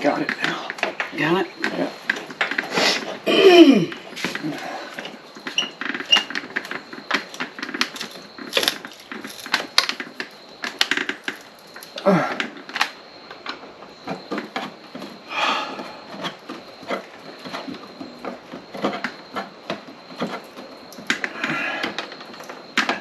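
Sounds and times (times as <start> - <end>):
hand tools clicking and tapping: 0.0 - 23.0.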